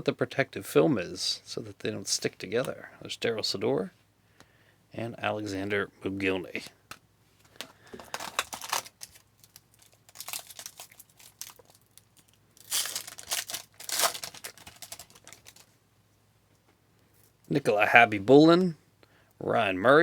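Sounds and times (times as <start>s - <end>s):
cards rustling and clicking: 6.6s - 15.7s
plastic packaging crinkling: 7.5s - 15.7s.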